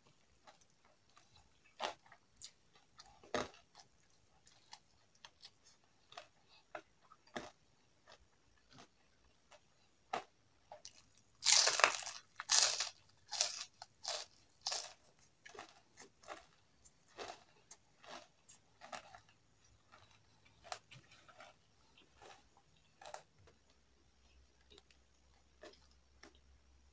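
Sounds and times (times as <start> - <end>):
crunchy food chewing: 0.0 - 26.6.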